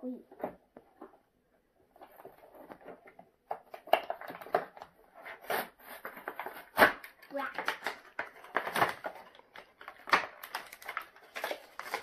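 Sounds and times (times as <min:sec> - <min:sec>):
toy packaging crinkling: 0:06.0 - 0:12.0.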